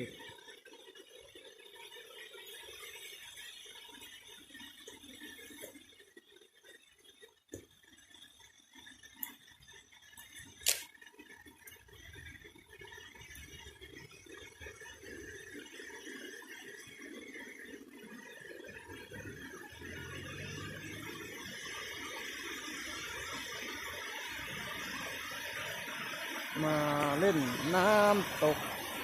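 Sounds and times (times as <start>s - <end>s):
small waterfall rushing: 19.1s - 29.0s.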